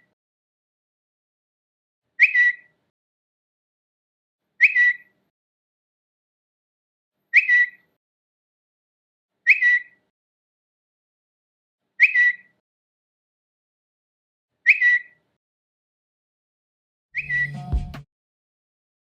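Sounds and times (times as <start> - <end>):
notification chirp: 17.2 - 18.0.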